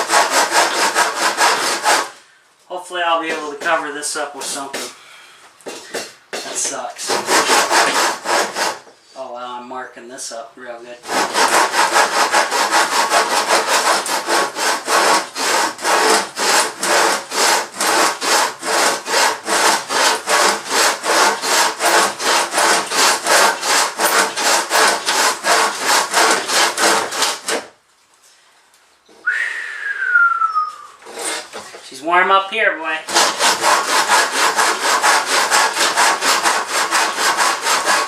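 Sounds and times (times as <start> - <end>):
handsaw cutting wood: 0.0 - 2.2, 5.7 - 8.9, 11.0 - 27.7, 31.0 - 31.8, 33.1 - 38.0.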